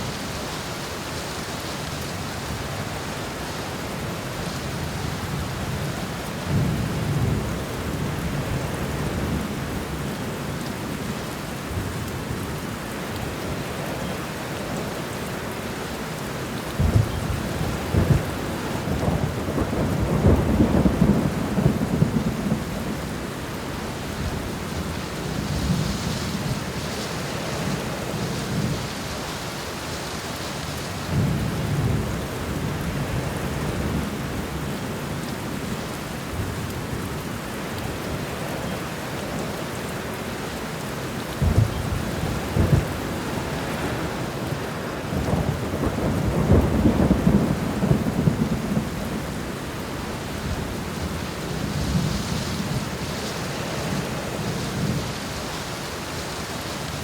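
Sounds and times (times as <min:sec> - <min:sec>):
rain on a window: 0:00.0 - 0:57.0
thunder rumbling: 0:16.8 - 0:26.9, 0:41.3 - 0:55.1.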